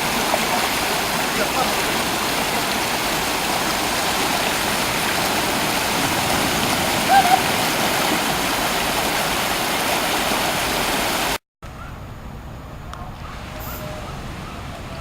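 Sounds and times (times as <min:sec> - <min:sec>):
surf breaking on beach: 0:00.0 - 0:11.4.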